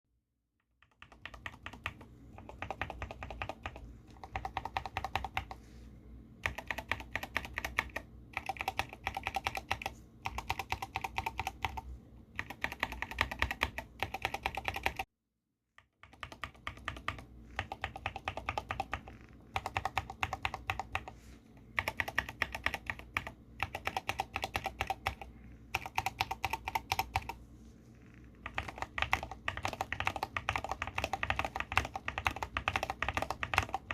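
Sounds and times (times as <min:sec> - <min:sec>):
mechanical keyboard keys clacking: 0:00.8 - 0:05.6, 0:06.4 - 0:11.8, 0:12.4 - 0:15.0, 0:16.0 - 0:21.1, 0:21.8 - 0:27.4, 0:28.4 - 0:33.9.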